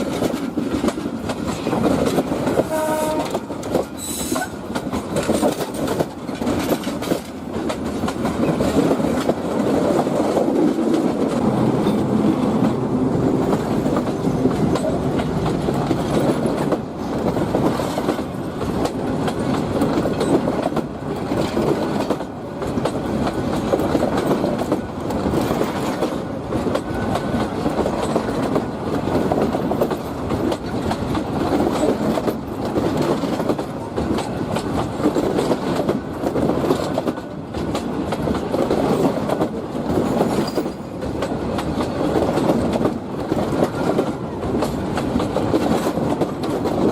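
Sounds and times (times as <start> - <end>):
train wheels rumbling on track: 0.0 - 46.9
wheels clacking over rail joints: 0.0 - 46.9.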